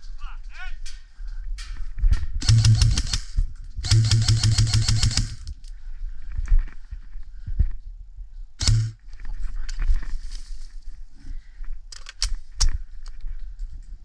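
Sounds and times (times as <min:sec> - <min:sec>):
airsoft rifle full-auto bursts: 0:02.4 - 0:05.5, 0:08.6 - 0:09.0.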